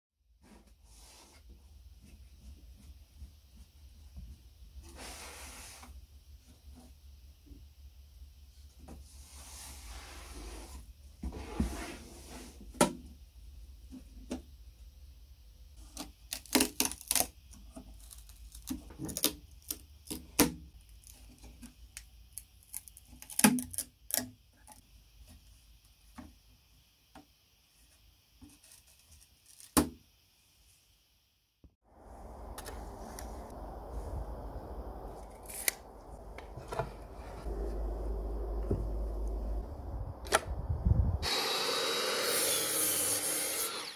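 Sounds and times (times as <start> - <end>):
low hum: 31.8 - 43.9.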